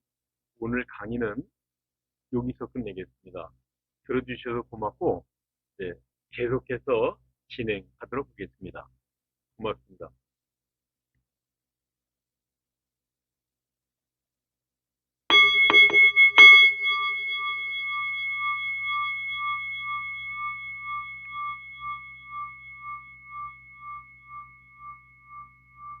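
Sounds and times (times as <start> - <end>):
metal bowl chime ringing: 15.3 - 26.0.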